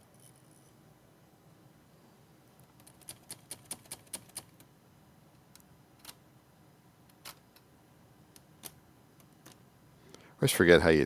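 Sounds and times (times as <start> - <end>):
typewriter ribbon mechanism clicks: 2.8 - 4.6.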